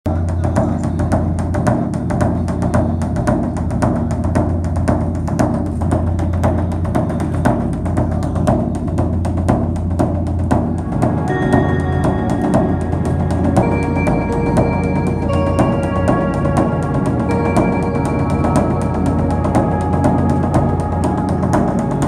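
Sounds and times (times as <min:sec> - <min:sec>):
drum beat: 0:00.1 - 0:22.0
held melodic tones: 0:10.6 - 0:22.0
low sustained drone: 0:10.6 - 0:22.0.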